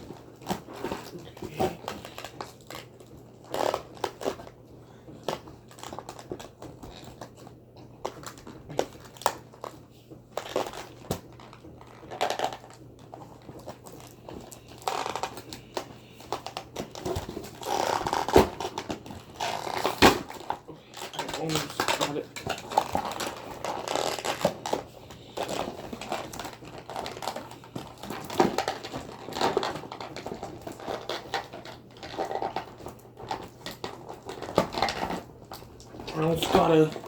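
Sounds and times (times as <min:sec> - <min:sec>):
packaging crinkling and scraping: 0:00.0 - 0:37.0.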